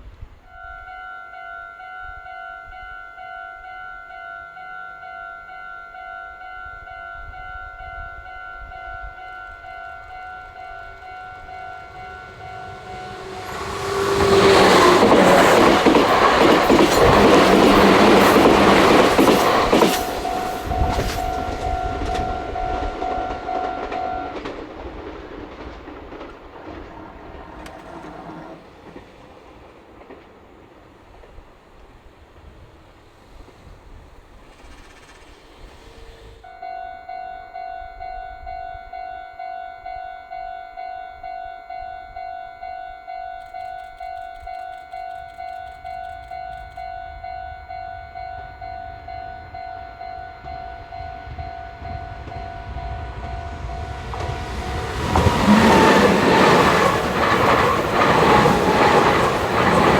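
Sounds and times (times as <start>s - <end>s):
electric train passing: 0.0s - 59.9s
rail clatter: 7.2s - 36.5s, 43.4s - 59.9s.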